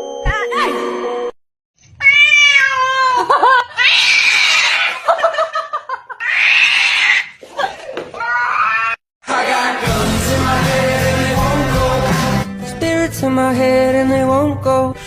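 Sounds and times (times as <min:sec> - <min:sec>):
cat meowing: 0:02.0 - 0:03.2, 0:03.8 - 0:04.9, 0:08.2 - 0:09.0.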